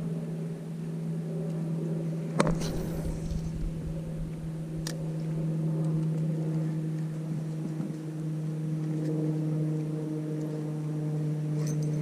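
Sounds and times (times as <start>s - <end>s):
motor humming: 2.4s - 7.1s.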